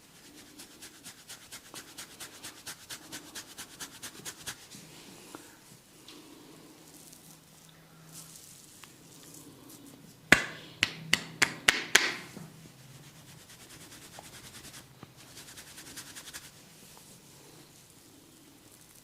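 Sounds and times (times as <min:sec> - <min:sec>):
sharp snapping strikes of hands: 0:10.3 - 0:12.3
fast light rubbing patter: 0:12.8 - 0:16.6.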